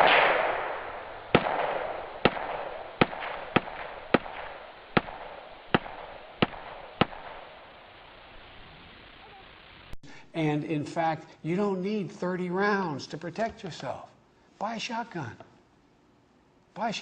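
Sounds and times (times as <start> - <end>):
gunshots with echo: 0.0 - 7.5.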